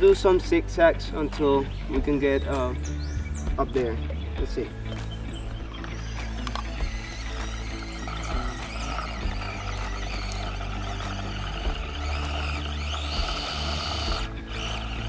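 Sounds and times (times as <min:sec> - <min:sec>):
small electric motor whining: 0:05.4 - 0:15.0.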